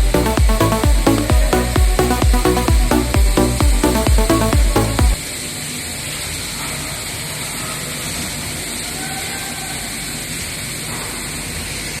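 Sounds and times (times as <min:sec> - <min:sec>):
factory machinery hum and hiss: 0:05.2 - 0:12.0.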